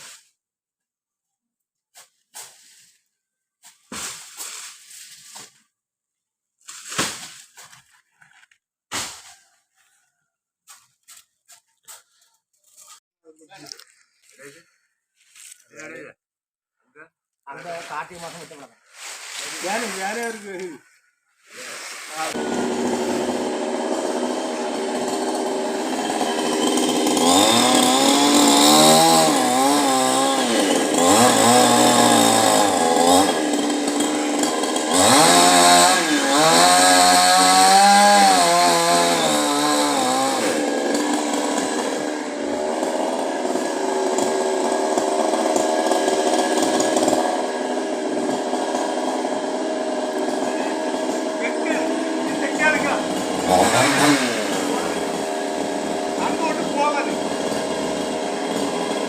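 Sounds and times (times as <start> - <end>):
chainsaw cutting wood: 17.6 - 20.7, 21.5 - 59.0.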